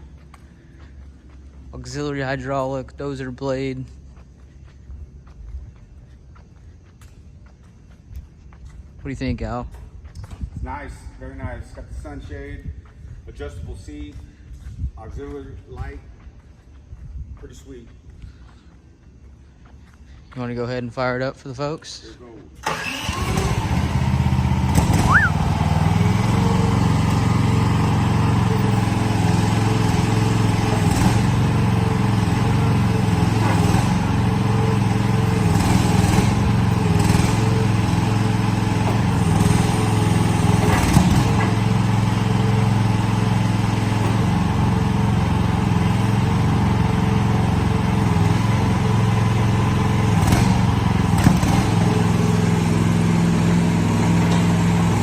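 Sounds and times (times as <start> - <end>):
mini-excavator engine droning: 0.0 - 9.4, 22.6 - 55.0.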